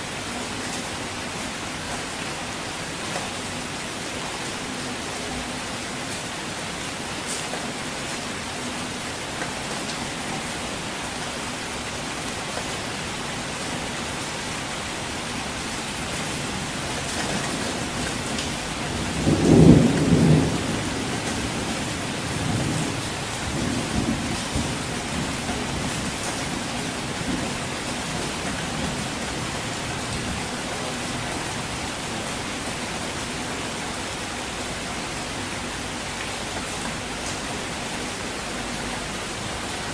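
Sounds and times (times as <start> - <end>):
steady rainfall: 0.0 - 39.9
distant thunder rumbling: 18.9 - 27.6.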